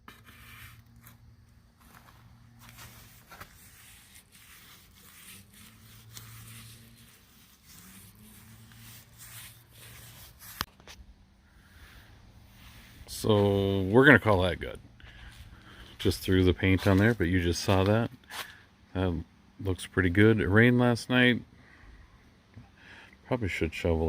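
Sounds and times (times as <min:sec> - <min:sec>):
paintbrush scraping rough wood: 0:00.0 - 0:01.2, 0:01.8 - 0:11.0, 0:11.6 - 0:14.5, 0:15.1 - 0:18.4
low steady hum: 0:00.0 - 0:24.0.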